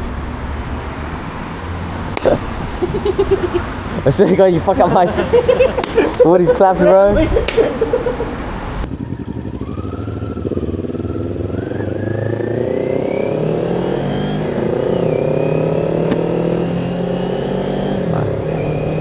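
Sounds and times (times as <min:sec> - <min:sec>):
motorcycle engine revving: 0:07.8 - 0:19.0.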